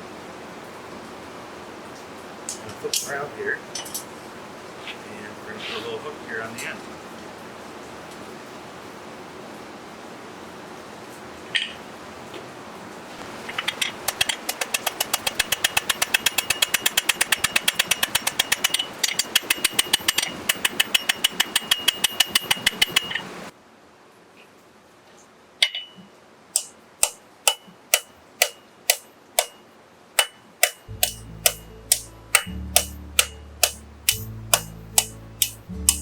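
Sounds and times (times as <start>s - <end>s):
hammer ringing on anvil: 15.3s - 23.3s, 26.6s - 29.6s, 30.2s - 36.0s.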